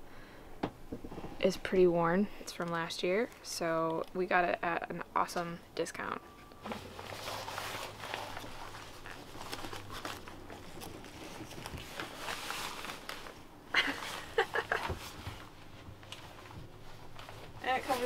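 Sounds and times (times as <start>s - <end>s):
jacket fabric rustling: 6.5s - 18.0s.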